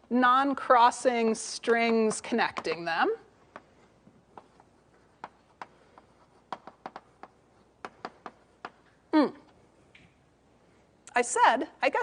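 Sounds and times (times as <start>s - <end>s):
chalk tapping on blackboard: 1.8s - 2.9s, 3.5s - 8.8s.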